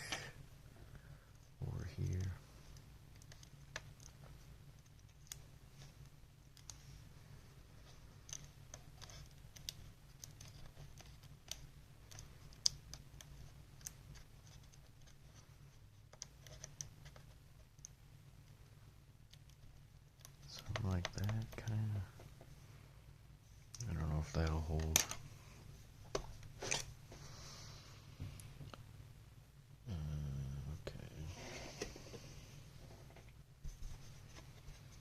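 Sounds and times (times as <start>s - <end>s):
steady low hum: 0.0s - 35.0s
fingers clicking and tapping small parts: 8.2s - 15.2s, 19.3s - 21.9s.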